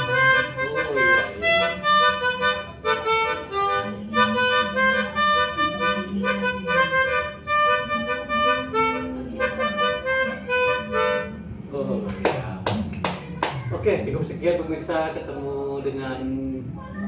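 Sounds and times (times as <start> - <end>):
keyboard melodica melody: 0.0 - 11.8.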